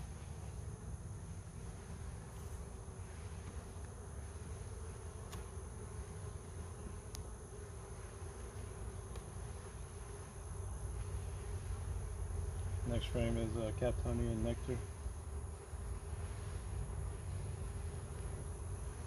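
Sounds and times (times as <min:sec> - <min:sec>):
bees buzzing: 0:00.0 - 0:19.0
light ticks: 0:07.1 - 0:07.3.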